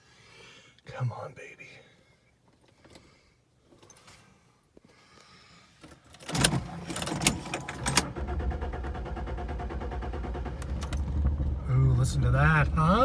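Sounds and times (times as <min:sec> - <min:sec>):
car engine cranking and starting: 0:06.2 - 0:13.0.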